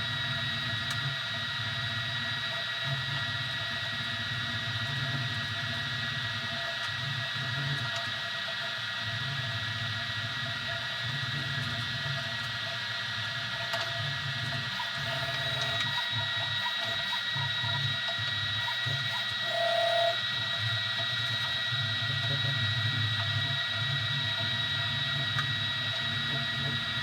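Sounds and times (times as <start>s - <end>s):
steady high whine: 14.6s - 27.0s
stepper motors humming: 14.7s - 22.5s.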